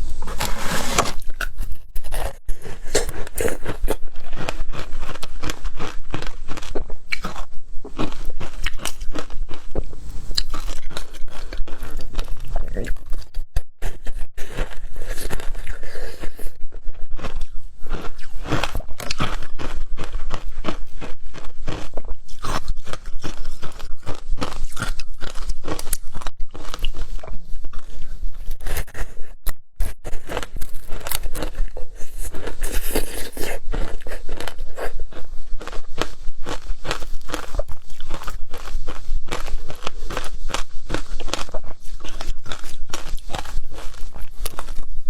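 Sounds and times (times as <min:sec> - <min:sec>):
person chewing crunchy ice: 0:00.0 - 0:45.0.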